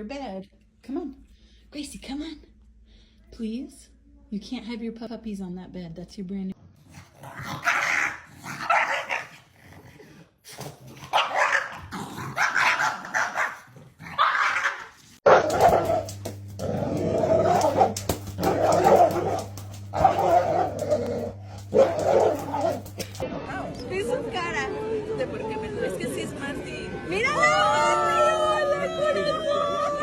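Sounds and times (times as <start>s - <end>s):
dogs barking and whining: 6.8s - 9.6s, 10.7s - 23.2s
steady low hum: 15.2s - 23.3s.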